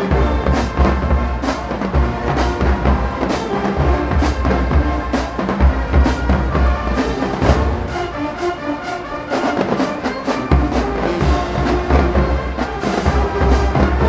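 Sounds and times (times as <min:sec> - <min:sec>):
marching band playing: 0:00.0 - 0:14.0.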